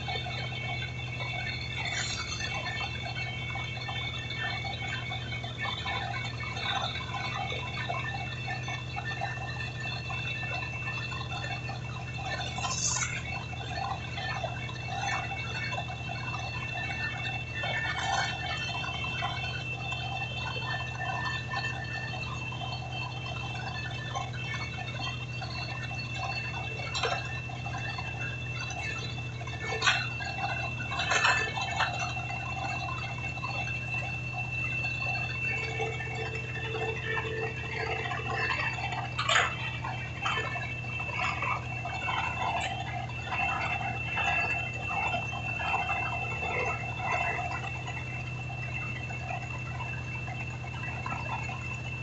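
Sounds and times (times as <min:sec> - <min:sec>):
high machine whine: 0:00.0 - 0:52.0
machinery low hum: 0:00.0 - 0:52.0.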